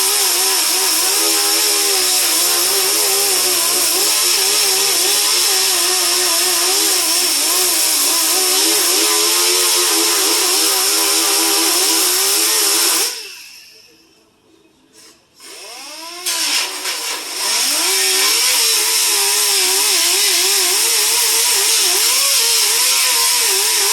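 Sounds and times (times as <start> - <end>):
power tool winding down: 0.0 - 13.7, 15.4 - 23.9
power tool running: 0.0 - 13.9, 15.4 - 23.9.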